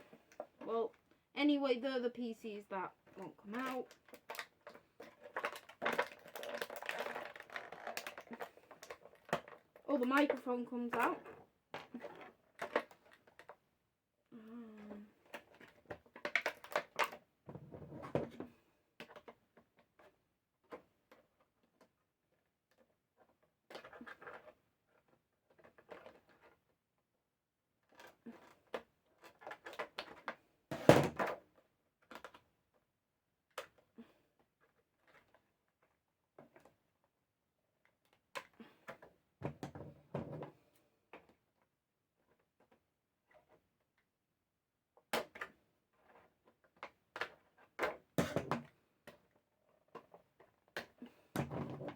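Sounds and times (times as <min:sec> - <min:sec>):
plastic packaging handled: 0:03.2 - 0:10.3.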